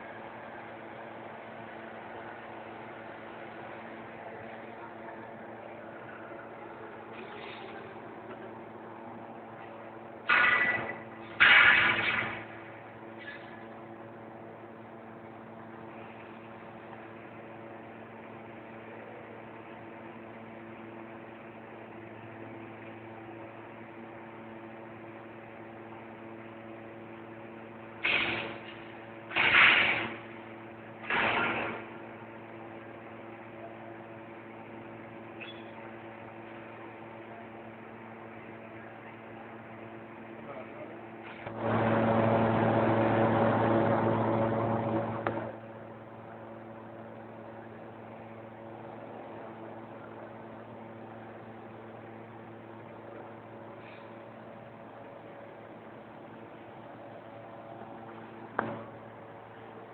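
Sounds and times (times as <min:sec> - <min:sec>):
electrical hum: 0:00.0 - 0:59.9
hiss: 0:28.0 - 0:30.2.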